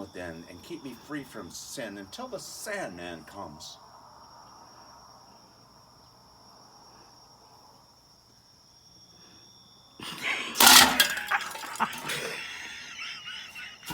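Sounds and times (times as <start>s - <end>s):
crickets chirping: 0.0s - 13.9s
bird bath crashing and breaking: 10.2s - 12.5s.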